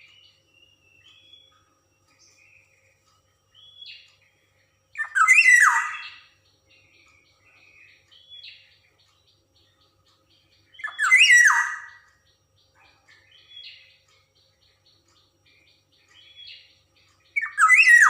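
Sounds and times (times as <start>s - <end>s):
bird whistled notes: 5.0s - 6.2s, 10.8s - 12.0s, 17.4s - 18.0s.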